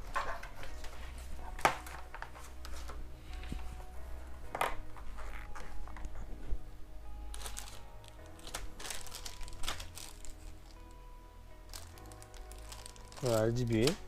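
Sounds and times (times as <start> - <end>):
parts rustling and rattling: 0.0 - 3.7
soft background music: 0.0 - 14.0.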